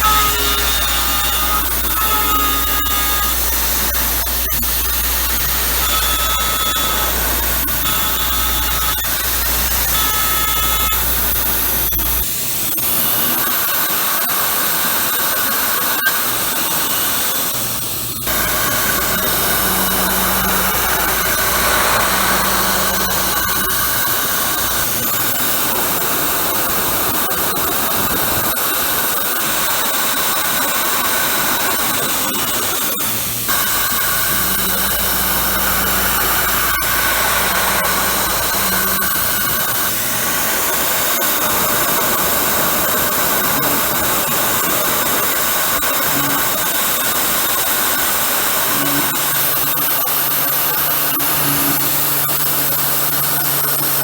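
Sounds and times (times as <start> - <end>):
faint pitched spindle tones: 0.0 - 12.3, 18.2 - 26.0, 33.5 - 44.2
milling machine hissing: 0.0 - 12.4, 13.2 - 27.9, 33.3 - 46.5.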